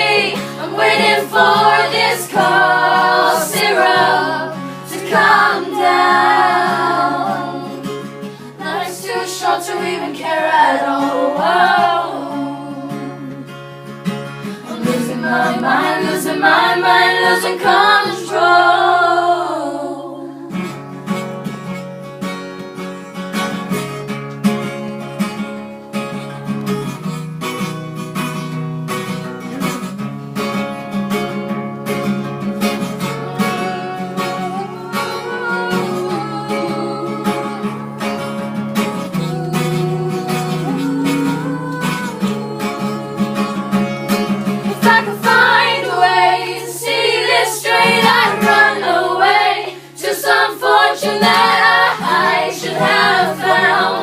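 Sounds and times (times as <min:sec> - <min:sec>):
wordless singing: 0:00.0 - 0:13.4, 0:14.5 - 0:20.8, 0:33.2 - 0:38.2, 0:38.8 - 0:54.0
acoustic guitar playing: 0:00.0 - 0:54.0.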